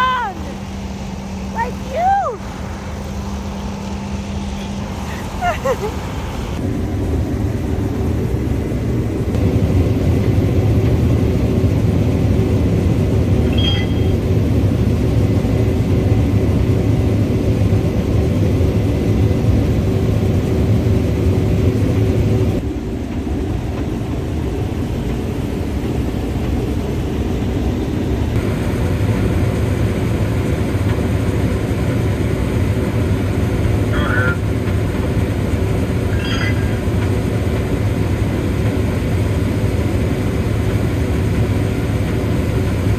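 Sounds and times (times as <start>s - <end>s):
combine harvester drone: 0.0s - 42.9s
high beep: 13.5s - 14.2s, 36.2s - 36.8s.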